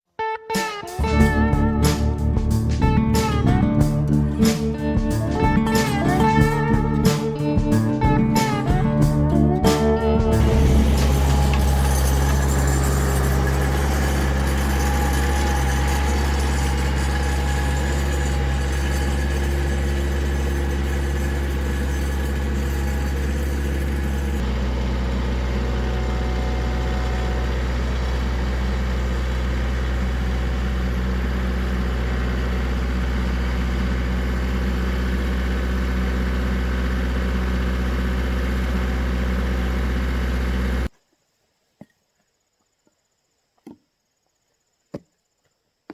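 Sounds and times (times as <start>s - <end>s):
engine idling with deep hum: 1.1s - 40.9s.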